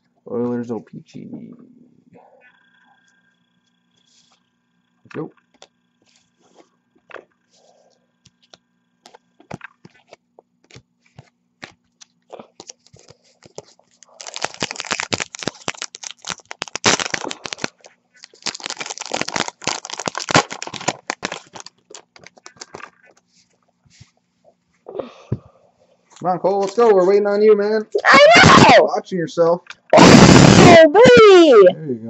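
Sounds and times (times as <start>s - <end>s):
card pack wrapper crinkling: 11.6s - 23.2s, 26.6s - 27.2s.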